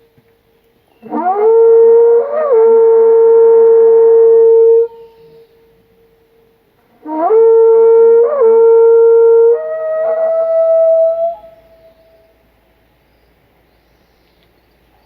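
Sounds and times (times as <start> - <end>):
conch-shell trumpet blasts: 1.0 - 5.2, 6.9 - 12.3
higher-pitched conch: 1.0 - 5.6, 7.0 - 12.3.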